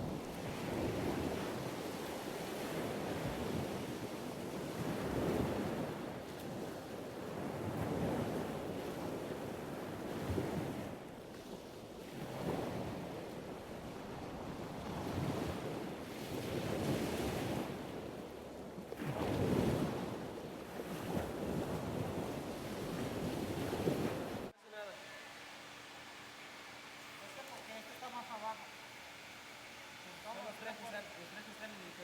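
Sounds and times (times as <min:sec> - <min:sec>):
wind on microphone: 0:00.0 - 0:24.5.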